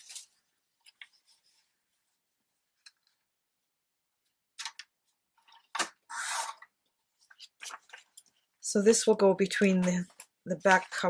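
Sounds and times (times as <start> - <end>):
paper rustling: 0.0 - 3.2, 4.6 - 8.6, 9.6 - 11.0.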